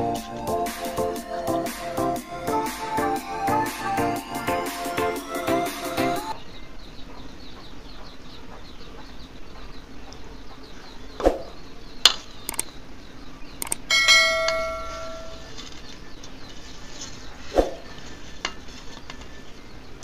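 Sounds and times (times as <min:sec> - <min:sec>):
metal dish ringing: 0:13.9 - 0:15.5.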